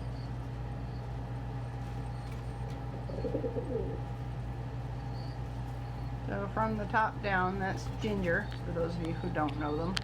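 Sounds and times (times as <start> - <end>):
steady low hum: 0.0 - 10.0
pigeon cooing: 2.2 - 4.2.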